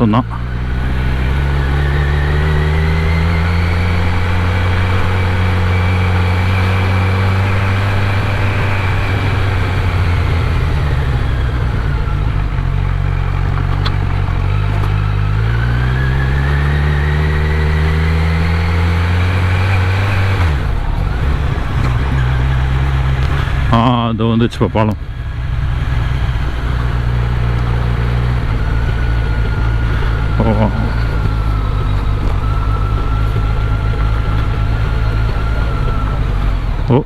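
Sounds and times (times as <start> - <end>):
motorcycle engine revving: 0.0 - 37.0.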